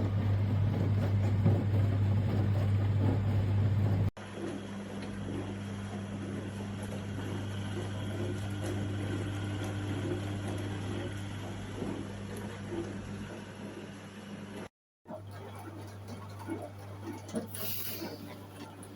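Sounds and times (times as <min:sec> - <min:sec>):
dishwasher motor hum: 0:00.0 - 0:18.9
dishwasher hiss: 0:17.4 - 0:18.6.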